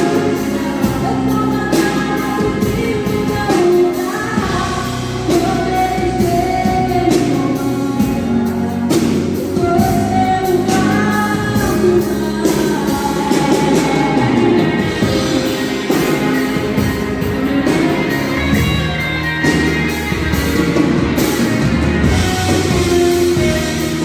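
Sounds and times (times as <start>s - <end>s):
drums: 0.0s - 24.0s
guitar: 0.0s - 24.0s
person singing a hymn: 0.0s - 24.0s.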